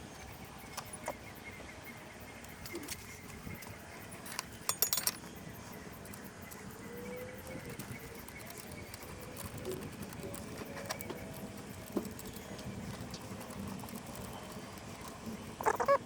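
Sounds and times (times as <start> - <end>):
metal tools clinking: 4.0 - 5.4.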